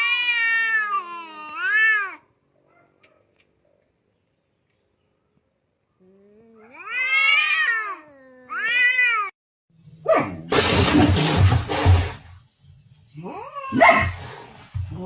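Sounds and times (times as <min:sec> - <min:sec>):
cat meowing: 0:00.0 - 0:02.3, 0:06.3 - 0:09.4
sudden noisy sound: 0:09.8 - 0:12.6.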